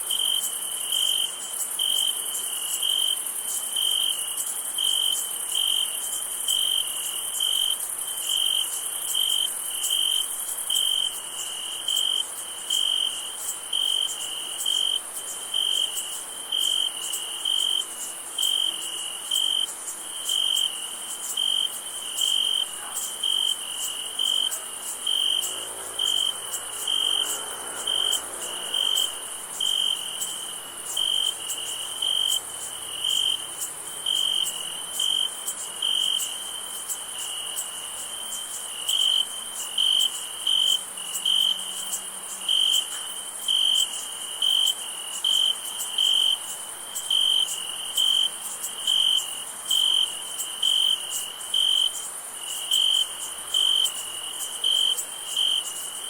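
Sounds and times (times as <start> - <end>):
cricket chirping: 0.0 - 56.0
high-pitched insect trill: 0.0 - 56.0.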